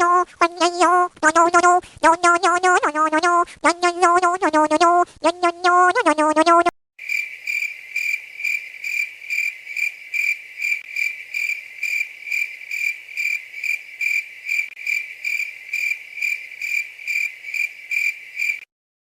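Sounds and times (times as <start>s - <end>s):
cricket chirping: 7.0s - 18.6s.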